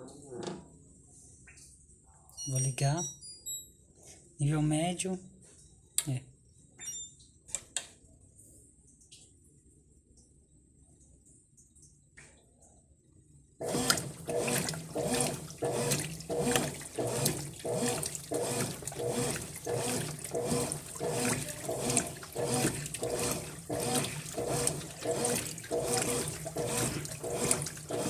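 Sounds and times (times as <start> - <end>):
washing machine agitating water: 13.6 - 28.0.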